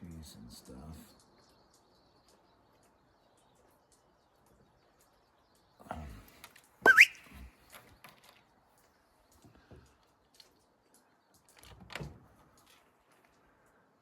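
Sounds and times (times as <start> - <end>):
person whistling rising pitch: 6.9 - 7.3.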